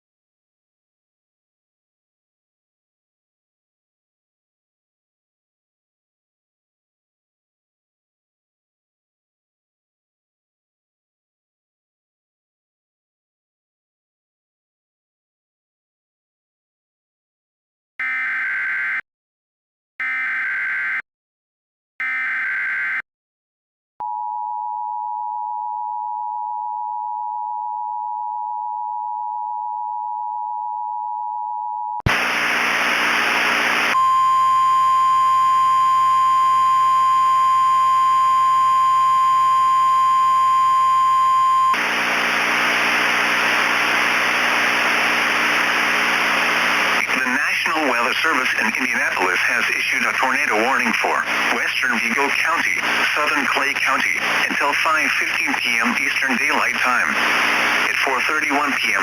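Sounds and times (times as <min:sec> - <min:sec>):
radio static hiss: 0:32.1 - 0:34.0, 0:41.8 - 0:59.0
data tone bursts: 0:32.1 - 0:59.0
two-tone attention signal: 0:34.0 - 0:41.8.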